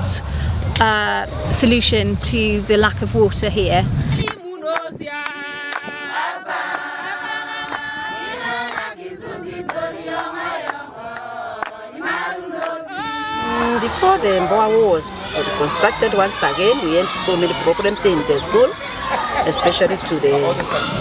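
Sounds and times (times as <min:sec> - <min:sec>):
group of voices singing: 0:04.2 - 0:21.0.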